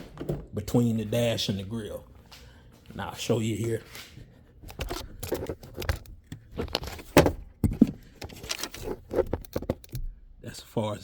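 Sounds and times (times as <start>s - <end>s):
sharp plastic clacks: 4.7s - 10.1s.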